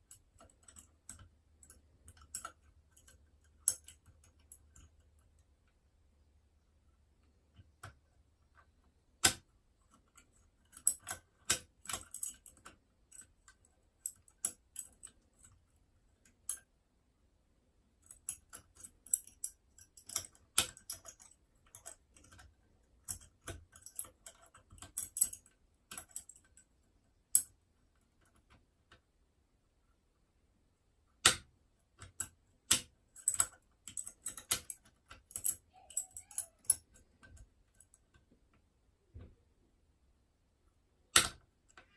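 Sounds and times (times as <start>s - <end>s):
lock picking clicks and scrapes: 0.0s - 5.2s, 9.2s - 15.6s, 18.0s - 26.6s, 31.2s - 38.0s, 41.1s - 41.8s.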